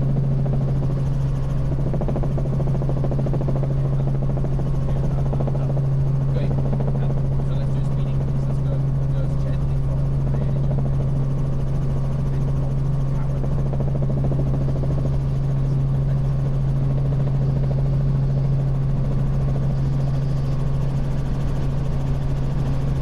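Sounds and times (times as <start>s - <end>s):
helicopter rotors and engine droning: 0.0s - 23.0s.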